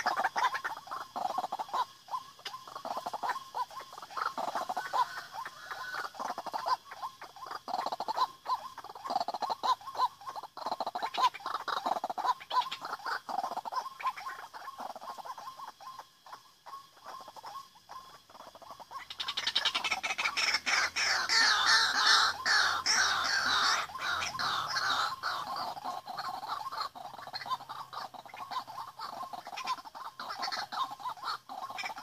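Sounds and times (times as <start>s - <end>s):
waterhens croaking calls: 0.0s - 32.0s.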